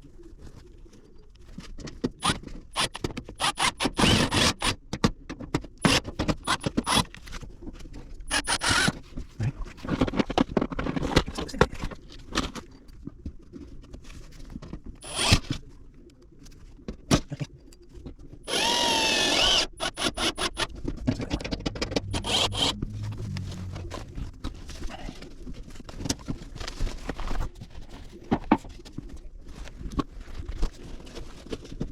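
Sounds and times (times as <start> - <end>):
power drill whine: 3.4 - 4.5, 8.3 - 8.9, 15.0 - 15.4, 18.5 - 20.6, 21.5 - 24.4.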